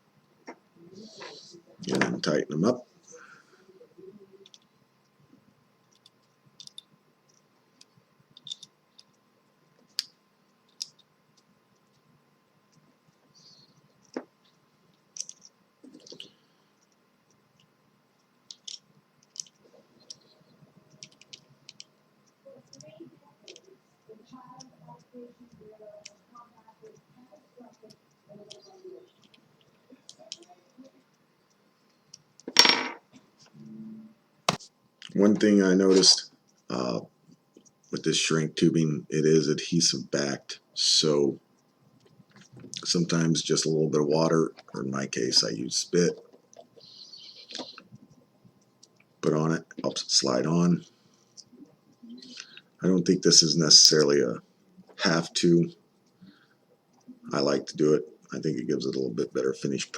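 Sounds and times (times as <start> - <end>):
faint clicks of handling parts: 5.8 - 9.2, 13.8 - 20.2.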